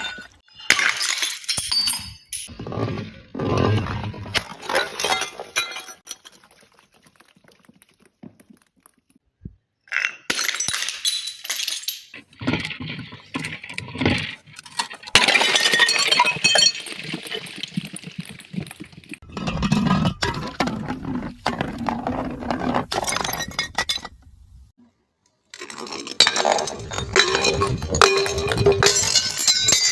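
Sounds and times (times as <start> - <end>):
glass bottles breaking: 0.0 - 2.5, 10.0 - 12.2, 15.2 - 17.1.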